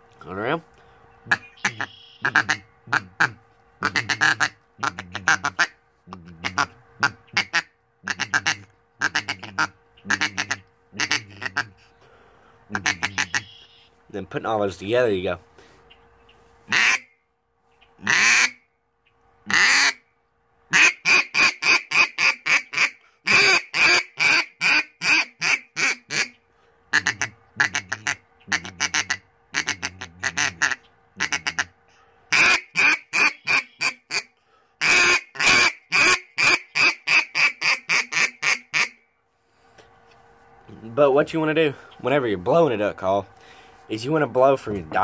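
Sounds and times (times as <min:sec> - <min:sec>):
duck call chattering: 0:01.2 - 0:11.9, 0:12.7 - 0:14.0, 0:16.7 - 0:17.1, 0:17.9 - 0:18.6, 0:19.5 - 0:20.0, 0:20.7 - 0:39.0
duck call quacking: 0:01.2 - 0:11.9, 0:12.7 - 0:13.9, 0:16.7 - 0:17.1, 0:18.0 - 0:18.6, 0:19.5 - 0:20.0, 0:20.7 - 0:39.0.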